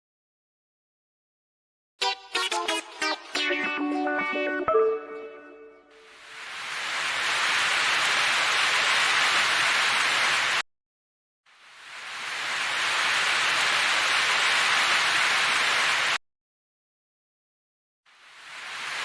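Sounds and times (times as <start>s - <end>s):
fries sizzling in hot oil: 18.1s - 19.0s.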